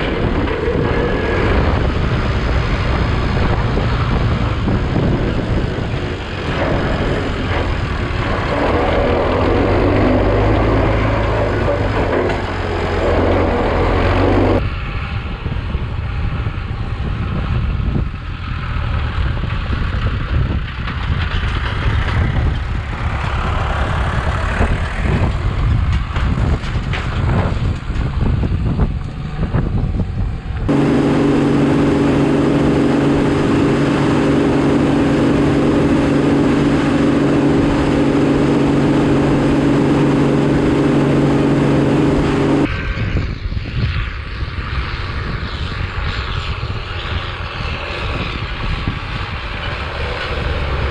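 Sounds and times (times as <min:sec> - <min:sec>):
tractor engine running: 0:00.0 - 0:14.6, 0:30.6 - 0:42.7.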